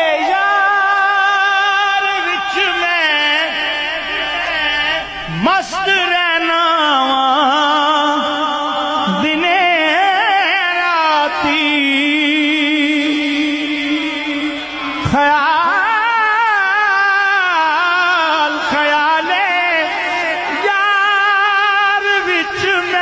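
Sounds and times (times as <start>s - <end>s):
person singing ornamented notes: 0.0s - 17.0s
low drone note: 3.1s - 6.5s.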